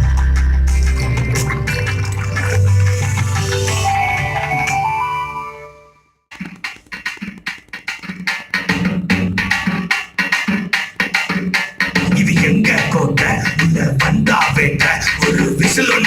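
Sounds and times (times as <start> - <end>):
strong bass line: 0.0 - 4.6
drum-heavy music track: 0.0 - 5.3, 6.3 - 16.0.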